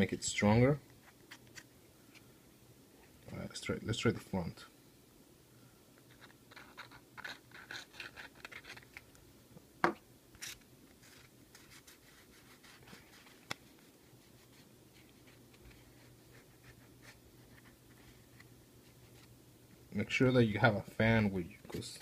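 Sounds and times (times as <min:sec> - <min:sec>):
faint fan hum: 0:00.0 - 0:22.0
light scratching and rubbing: 0:06.1 - 0:08.9.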